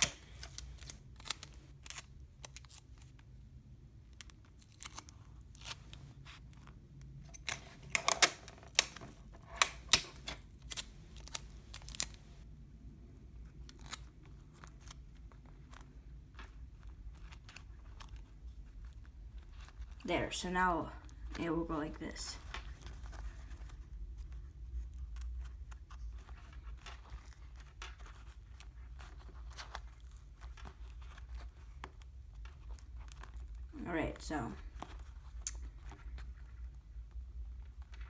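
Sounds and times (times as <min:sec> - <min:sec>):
sticky tape tearing: 0:00.0 - 0:03.1, 0:07.3 - 0:12.2.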